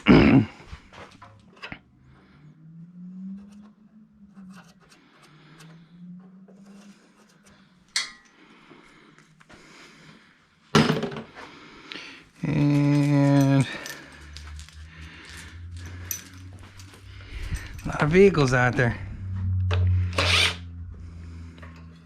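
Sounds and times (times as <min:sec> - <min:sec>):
metal tools and parts clinking: 0:12.8 - 0:18.6.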